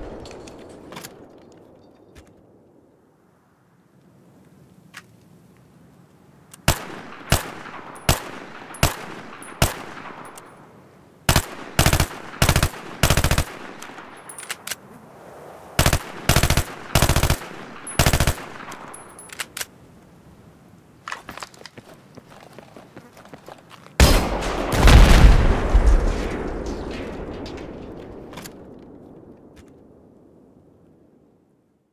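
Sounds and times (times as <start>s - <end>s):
automatic gunfire bursts: 11.3s - 13.6s, 15.8s - 18.8s
single gunshots: 24.0s - 29.0s.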